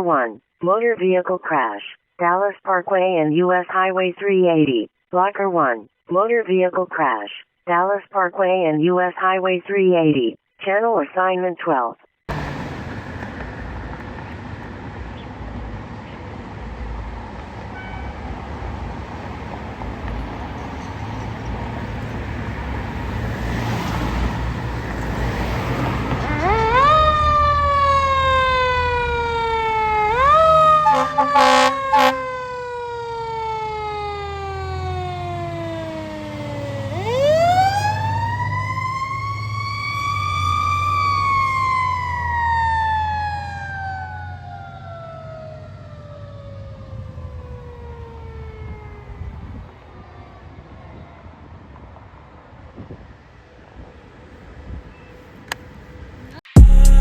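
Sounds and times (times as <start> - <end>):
fire engine rumbling: 12.3 - 17.6, 18.2 - 49.4
air horn blasts: 30.1 - 32.3.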